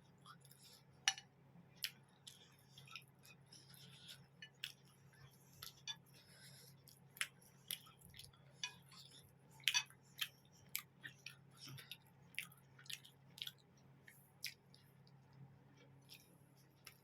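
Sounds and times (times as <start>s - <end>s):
faint steady hum: 0.0s - 17.0s
wet chewing mouth clicks: 9.7s - 14.8s.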